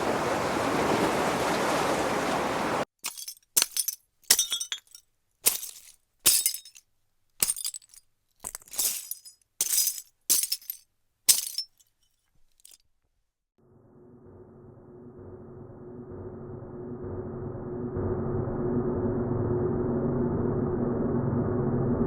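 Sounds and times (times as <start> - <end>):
glass breaking: 3.0 - 6.8, 7.4 - 11.9.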